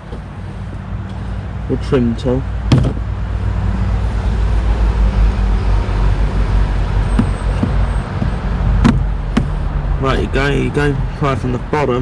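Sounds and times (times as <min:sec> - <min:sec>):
vehicle engine humming: 0:02.5 - 0:10.8.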